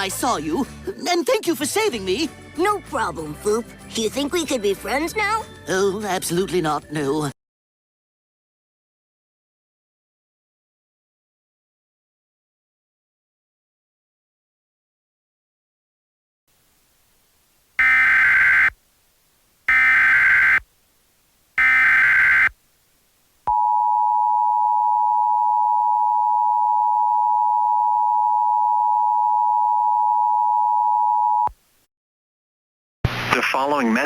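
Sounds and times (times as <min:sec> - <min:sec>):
two-tone attention signal: 0:17.8 - 0:18.7, 0:19.7 - 0:20.6, 0:21.6 - 0:22.5
warbling digital header bursts: 0:17.8 - 0:18.7, 0:19.7 - 0:20.6, 0:21.6 - 0:22.5.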